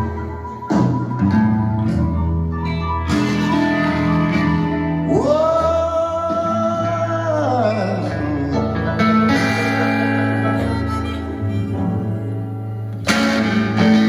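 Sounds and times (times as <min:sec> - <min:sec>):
guitar: 0:00.0 - 0:14.0
person singing: 0:05.1 - 0:14.0.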